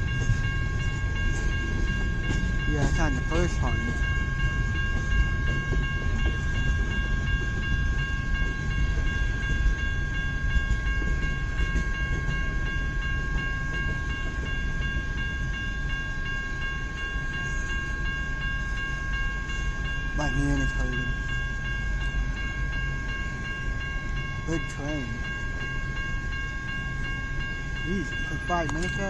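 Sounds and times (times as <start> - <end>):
steady high tones: 0.0 - 29.0
train wheels rumbling on rail: 0.0 - 29.0.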